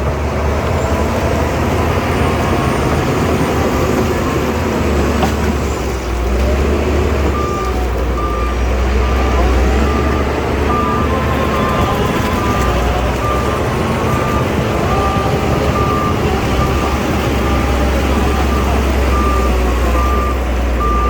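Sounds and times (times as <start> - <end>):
bulldozer diesel engine running: 0.0 - 21.0
reversing alarm beeping: 7.2 - 21.0.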